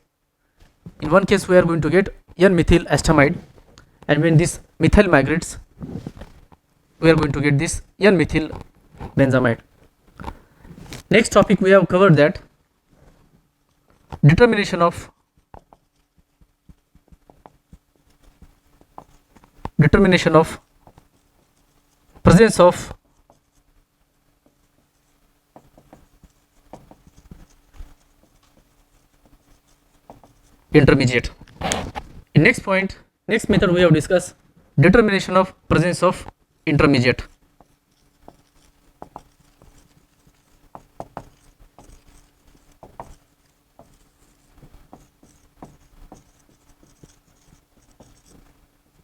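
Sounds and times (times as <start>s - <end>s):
faint electrical hum: 0.0s - 49.0s
pen writing: 17.4s - 23.7s, 24.5s - 31.0s, 37.2s - 49.0s.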